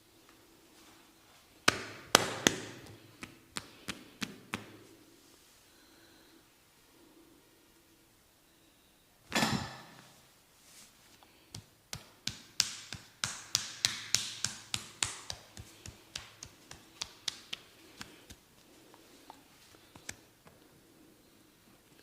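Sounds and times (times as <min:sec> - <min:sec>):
rubbing slap: 0:11.5 - 0:18.4.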